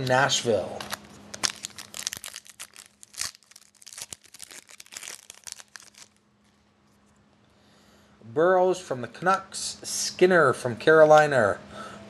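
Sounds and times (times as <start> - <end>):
foil wrapper crinkling and tearing: 0.8 - 6.2.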